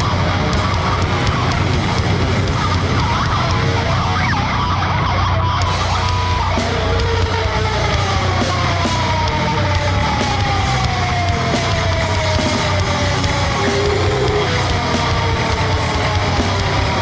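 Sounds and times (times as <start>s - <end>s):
distorted guitar noise: 0.0s - 17.0s
feedback squeals: 13.4s - 14.7s.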